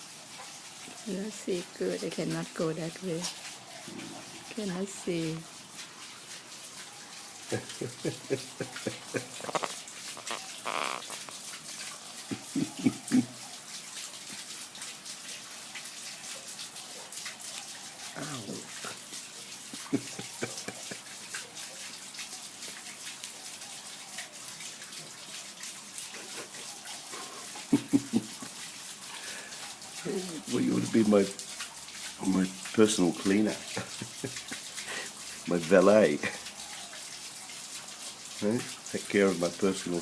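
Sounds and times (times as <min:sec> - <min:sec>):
steady hiss: 0:01.4 - 0:13.4, 0:26.1 - 0:31.4
low vocal sounds: 0:12.3 - 0:13.3.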